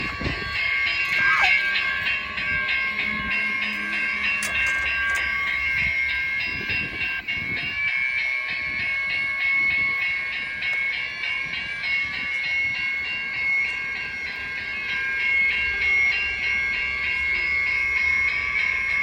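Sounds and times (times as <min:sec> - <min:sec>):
high multi-tone whine: 0:00.0 - 0:19.0
train running noise: 0:00.0 - 0:19.0
falling squeal: 0:00.9 - 0:05.6.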